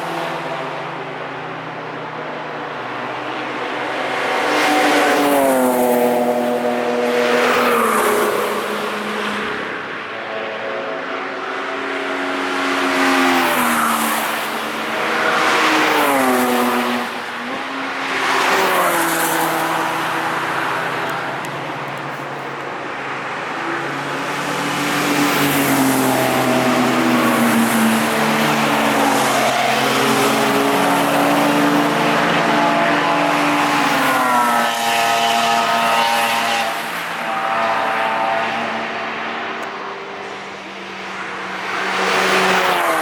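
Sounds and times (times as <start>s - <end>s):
race cars passing at speed: 0.0s - 43.0s.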